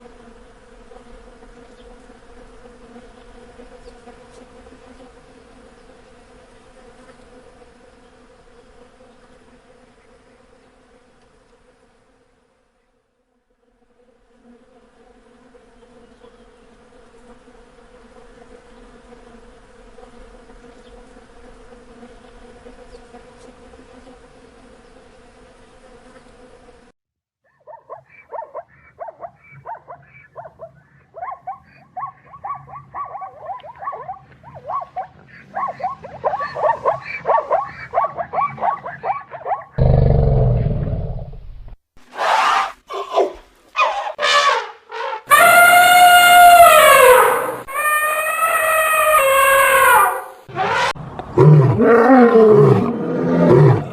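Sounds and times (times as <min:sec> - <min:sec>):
bees buzzing: 0:14.2 - 0:26.9, 0:39.8 - 0:41.8, 0:45.2 - 0:51.7
lion roaring: 0:39.8 - 0:41.6, 0:50.0 - 0:53.9.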